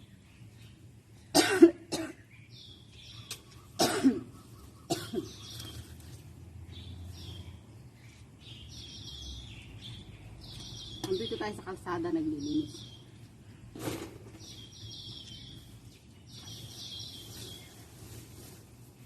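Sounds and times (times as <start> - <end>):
person coughing: 1.3 - 2.2, 3.8 - 4.3, 4.9 - 5.3.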